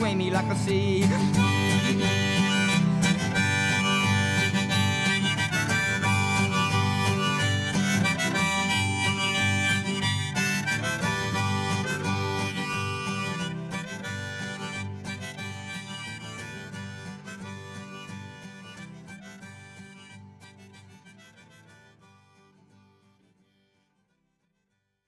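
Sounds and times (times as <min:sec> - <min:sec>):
harmonica melody: 0:00.0 - 0:24.0
acoustic guitar: 0:00.0 - 0:24.6.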